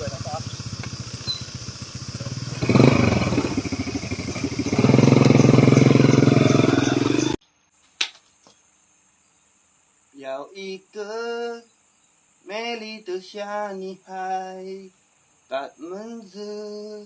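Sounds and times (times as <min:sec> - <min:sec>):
small petrol engine revving: 0:00.0 - 0:07.4.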